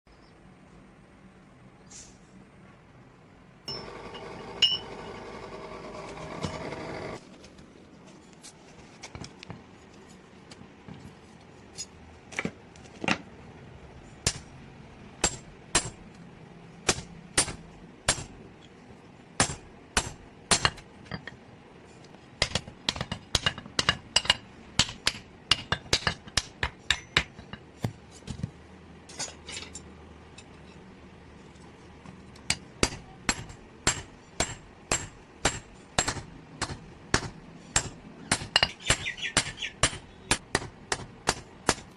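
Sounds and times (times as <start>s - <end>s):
hammer striking metal on anvil: 3.7s - 5.0s, 15.2s - 16.0s, 16.9s - 18.4s, 19.4s - 21.2s, 22.4s - 27.6s, 32.5s - 41.9s.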